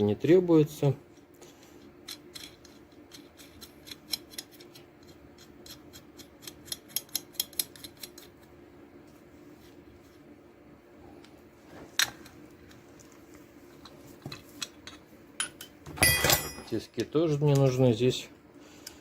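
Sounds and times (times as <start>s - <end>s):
faint steady hum: 0.0s - 19.0s
metallic clicks of hand tool: 2.1s - 8.3s.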